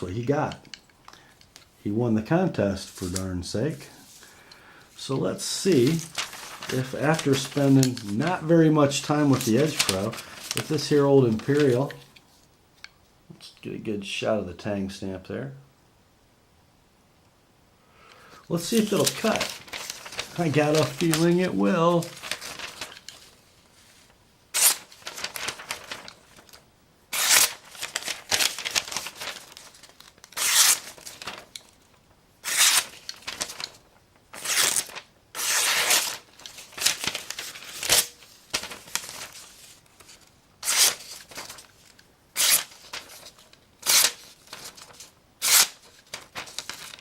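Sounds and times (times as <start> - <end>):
paper rustling: 0.0 - 12.5, 18.5 - 47.0
knife slicing through paper: 24.6 - 26.1, 27.1 - 29.6, 30.3 - 31.4, 32.4 - 33.6, 34.4 - 39.6, 40.6 - 41.7, 42.4 - 43.2.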